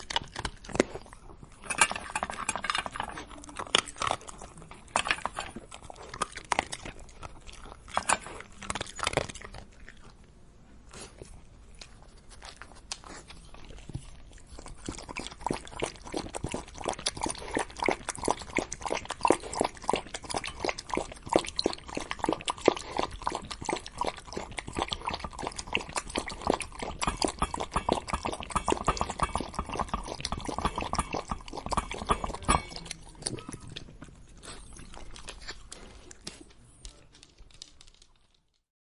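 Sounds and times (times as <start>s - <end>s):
dog crunching dry food: 0.0s - 10.3s, 10.9s - 38.7s
dog lapping water: 14.6s - 34.0s.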